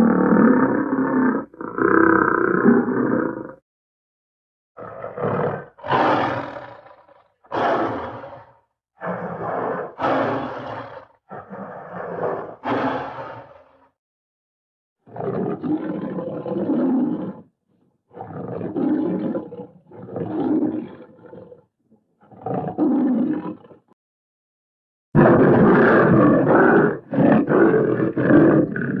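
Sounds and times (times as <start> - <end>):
bear roaring: 0.0 - 3.6, 4.8 - 13.9, 25.2 - 29.0.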